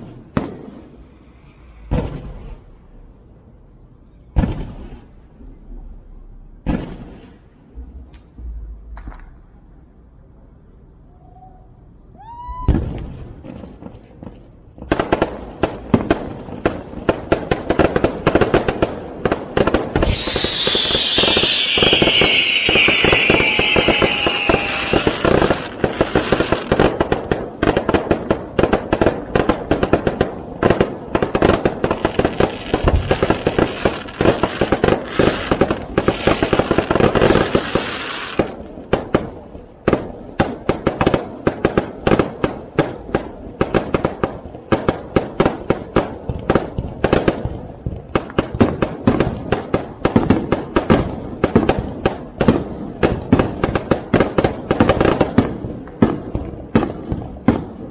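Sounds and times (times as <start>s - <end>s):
fireworks crackling and banging: 0.0s - 3.6s, 4.2s - 10.2s, 12.6s - 57.9s
firework whistle falling in pitch: 20.0s - 25.8s.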